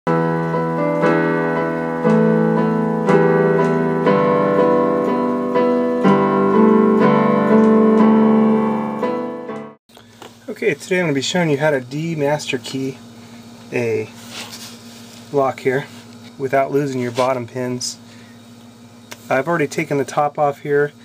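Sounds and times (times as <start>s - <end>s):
piano chords: 0.1s - 9.8s.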